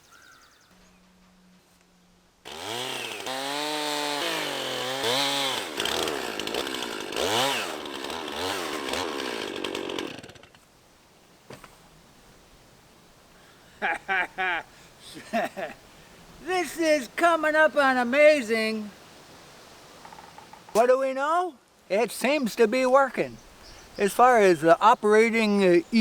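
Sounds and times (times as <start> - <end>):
chainsaw revving and cutting log: 2.4 - 10.6.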